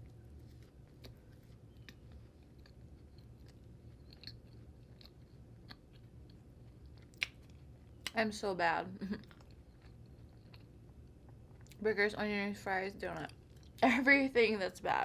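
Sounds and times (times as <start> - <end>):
chewing food: 0.0 - 8.2, 9.2 - 11.8, 13.0 - 13.9
low steady hum: 0.0 - 15.0.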